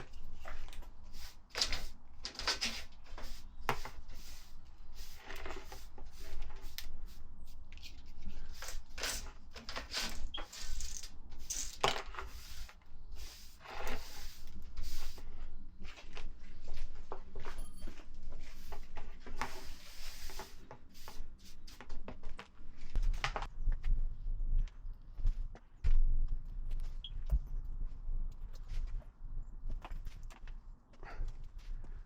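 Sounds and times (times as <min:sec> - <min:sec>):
objects scraping and knocking: 0:00.0 - 0:06.8, 0:07.7 - 0:15.3.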